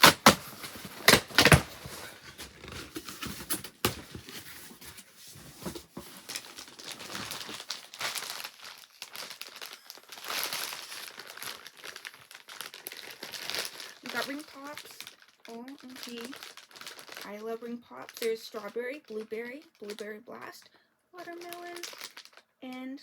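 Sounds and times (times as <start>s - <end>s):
cardboard ripping: 0.0s - 14.8s
box and packaging rustling: 0.0s - 20.0s, 21.2s - 22.4s.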